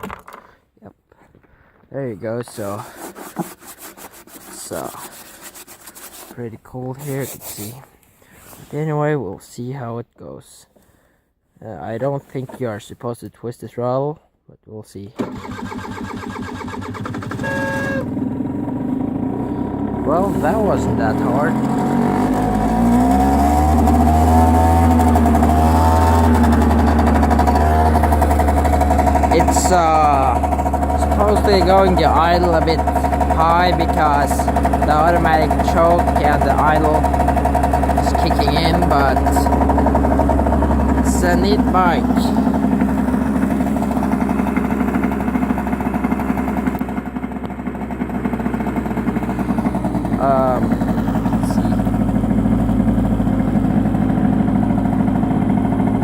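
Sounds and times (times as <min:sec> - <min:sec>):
scooter engine idling fast: 0:15.2 - 0:56.0.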